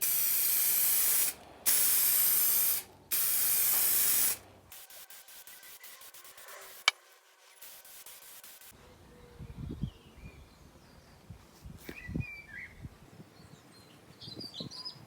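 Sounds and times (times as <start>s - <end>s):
aerosol can spraying hiss: 0.0s - 6.9s, 7.6s - 8.7s.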